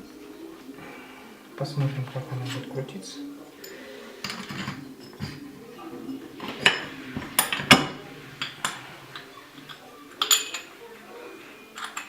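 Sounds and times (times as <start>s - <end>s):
metal parts clinking and tapping: 3.6s - 5.4s, 6.4s - 10.8s, 11.8s - 12.0s.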